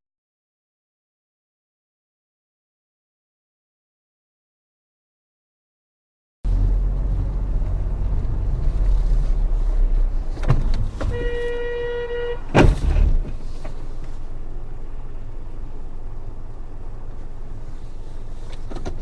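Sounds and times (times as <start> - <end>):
car road and engine rumble: 6.5 - 19.0
car horn: 11.0 - 13.2
loud sudden thump: 12.5 - 13.4.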